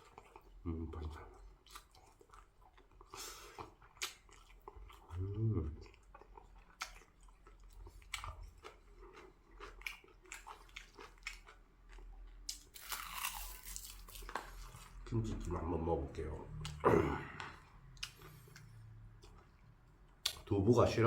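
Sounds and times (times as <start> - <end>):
person chewing food: 0.0 - 15.6, 16.4 - 20.5
person humming: 5.1 - 5.8.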